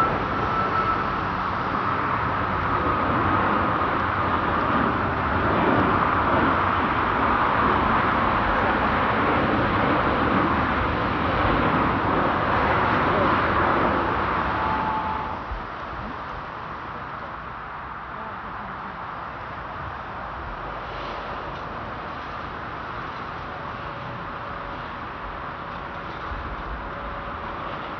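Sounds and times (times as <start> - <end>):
jet engines roaring: 0.0 - 17.9.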